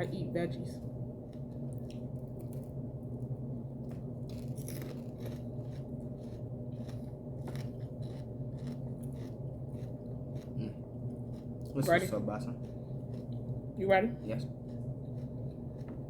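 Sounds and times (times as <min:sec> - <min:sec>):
low hum: 0:00.0 - 0:16.0
crunchy chewing of celery: 0:01.2 - 0:16.0.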